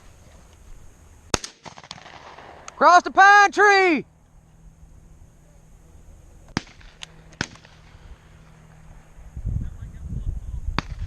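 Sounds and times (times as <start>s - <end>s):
distant shotgun shots: 1.3s - 2.8s, 6.5s - 8.4s, 10.8s - 11.0s.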